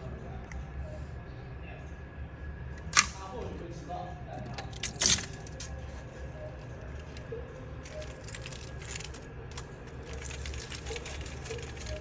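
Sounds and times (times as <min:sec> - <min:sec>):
plastic parts clicking and rattling: 0:04.4 - 0:05.8, 0:06.6 - 0:12.0.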